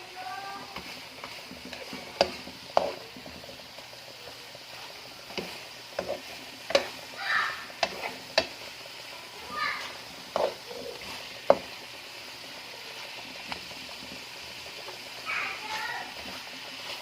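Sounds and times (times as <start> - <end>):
food sizzling in a pan: 0.0 - 17.0
utensil scraping pan: 0.5 - 3.6, 4.7 - 8.7, 9.7 - 11.8.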